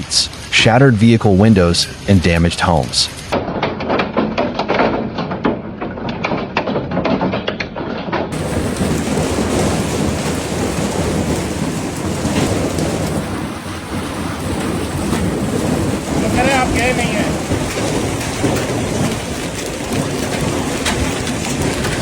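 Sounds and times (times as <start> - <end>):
heavy downpour of rain: 0.0 - 3.4, 8.3 - 22.0
hailstones striking hard surfaces: 3.3 - 22.0.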